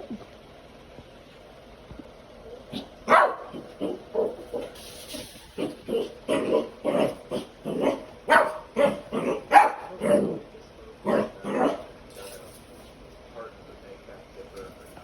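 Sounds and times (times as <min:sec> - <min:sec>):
puppy barking: 0:02.7 - 0:04.8, 0:05.6 - 0:10.4, 0:11.0 - 0:11.9.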